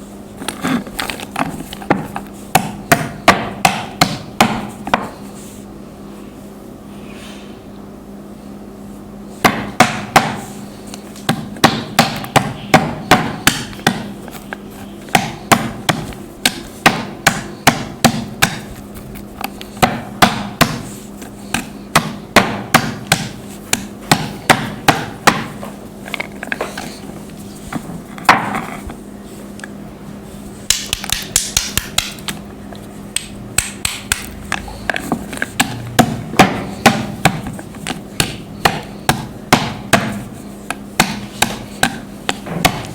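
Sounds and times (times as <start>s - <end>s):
faint steady hum: 0.0s - 42.9s
clay being crushed: 9.4s - 29.8s, 30.6s - 42.9s.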